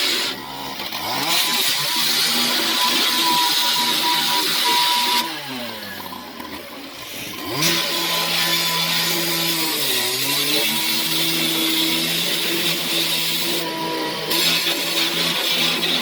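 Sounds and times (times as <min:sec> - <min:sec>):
saw engine revving: 0:00.0 - 0:16.0.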